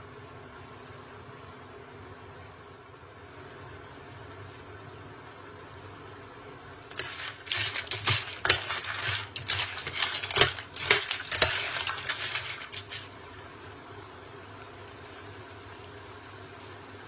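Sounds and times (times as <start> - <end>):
utensil stirring and scraping pan: 6.9 - 13.1.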